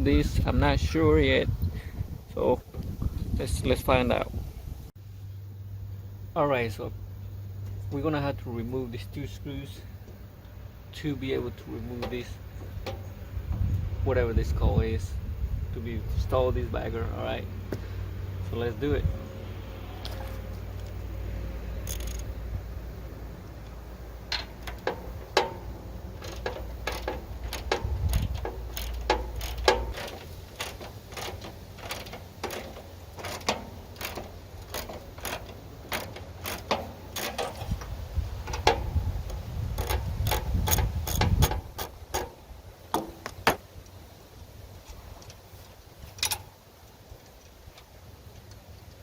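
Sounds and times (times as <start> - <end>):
metal clicks and knocks: 11.9 - 13.2, 23.6 - 43.7, 46.0 - 46.6
ratchet wrench clicking: 21.8 - 22.3, 24.3 - 42.4.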